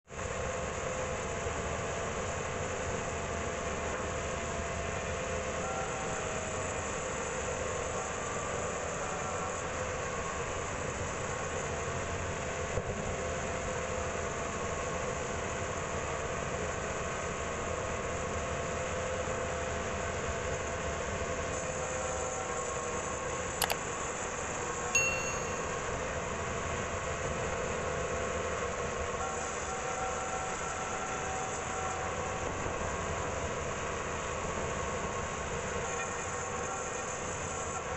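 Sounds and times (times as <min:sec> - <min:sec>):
sharp clicks: 0:23.6 - 0:23.8.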